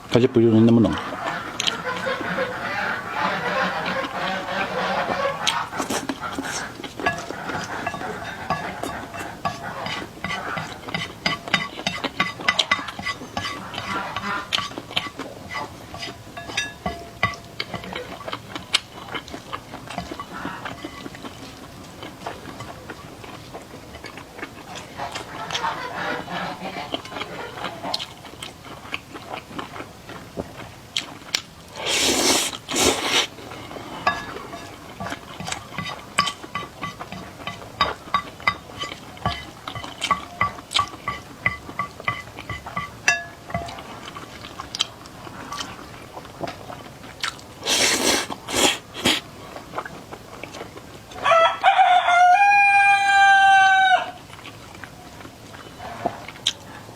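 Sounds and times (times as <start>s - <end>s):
metal utensils clinking on pot: 5.4s - 19.2s, 19.8s - 23.1s, 33.6s - 44.0s.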